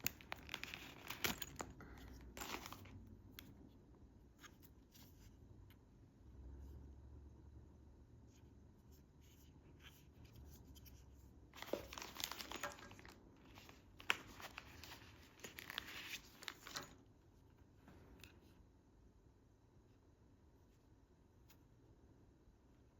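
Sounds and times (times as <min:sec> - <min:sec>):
packaging crinkling and tearing: 0:00.0 - 0:01.7, 0:11.6 - 0:17.0.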